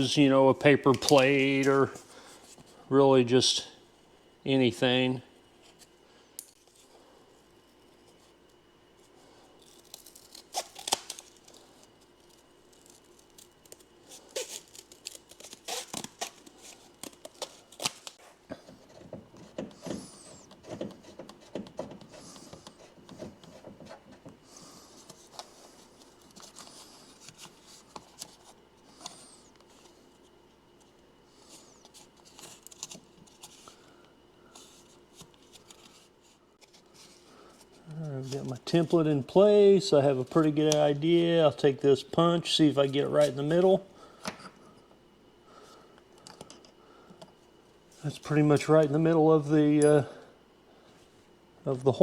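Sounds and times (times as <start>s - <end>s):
cardboard tearing crackles: 9.6s - 18.2s.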